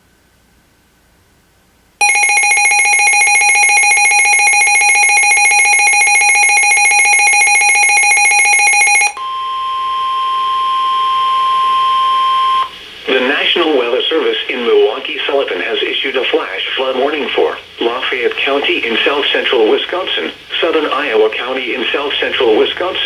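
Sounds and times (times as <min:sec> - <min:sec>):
harsh pulsing alarm: 0:02.0 - 0:12.8
steady warning alarm tone: 0:02.0 - 0:12.8.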